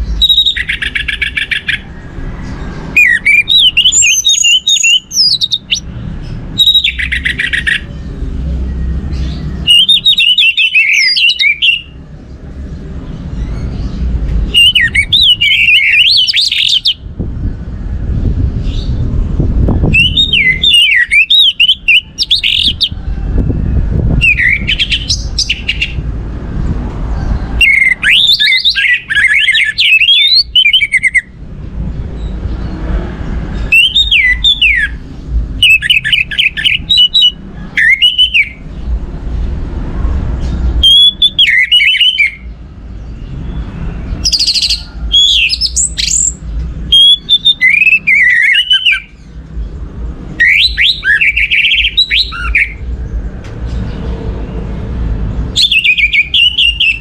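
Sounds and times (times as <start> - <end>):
thrush singing whistled phrases: 0.1 - 1.8, 3.0 - 5.9, 6.5 - 7.9, 8.8 - 12.0, 14.5 - 17.0, 19.9 - 22.9, 24.2 - 26.0, 27.6 - 31.4, 33.6 - 35.0, 35.6 - 38.6, 40.8 - 42.5, 44.2 - 49.3, 50.3 - 52.8, 55.5 - 57.0.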